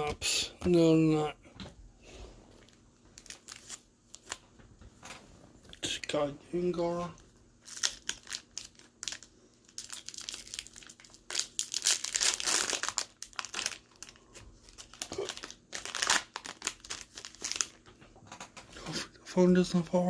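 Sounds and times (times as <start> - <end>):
foil wrapper crinkling and tearing: 2.6 - 4.4, 7.6 - 17.9.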